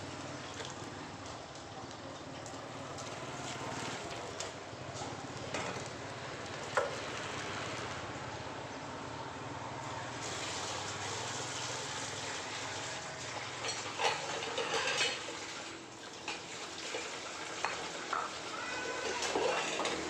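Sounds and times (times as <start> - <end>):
tap water running: 10.2 - 20.0
dishes clattering in sink: 13.4 - 15.6, 16.2 - 20.0.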